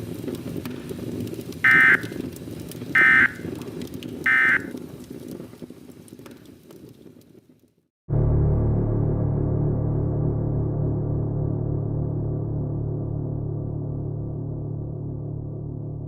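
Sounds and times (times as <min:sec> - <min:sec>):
low crackling rumble: 0:00.0 - 0:16.0
digital data tone bursts: 0:04.3 - 0:04.7.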